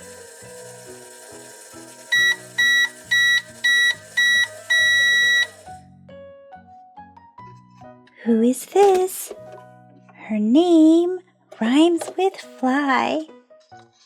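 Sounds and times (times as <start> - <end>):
microwave timer beeps: 0.0 - 5.7
light background music: 0.0 - 14.0.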